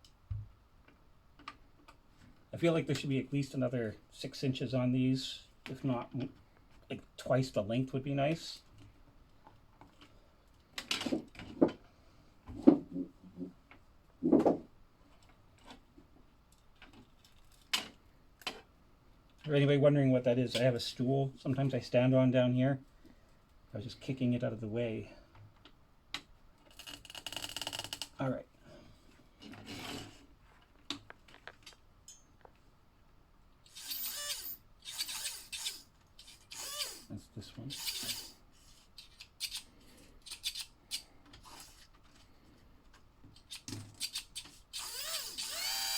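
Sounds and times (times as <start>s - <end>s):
stool knocking and scraping: 14.2s - 14.7s.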